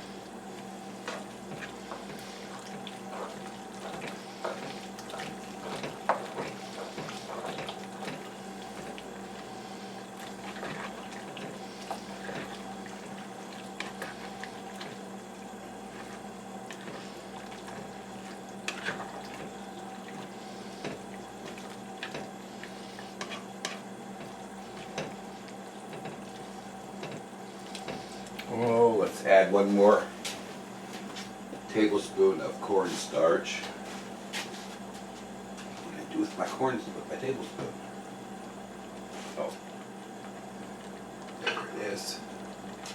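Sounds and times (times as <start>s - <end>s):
steady hum: 0.0s - 42.9s
sauce simmering with pops: 37.9s - 41.4s.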